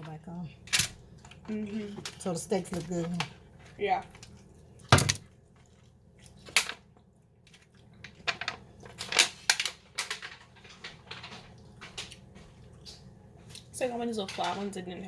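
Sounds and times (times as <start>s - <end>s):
person chewing wetly: 3.4s - 9.0s, 11.4s - 13.7s.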